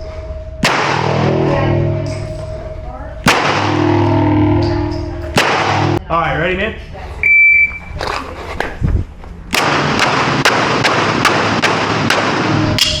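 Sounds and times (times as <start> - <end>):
handgun shots: 3.3 - 3.7, 9.5 - 12.9.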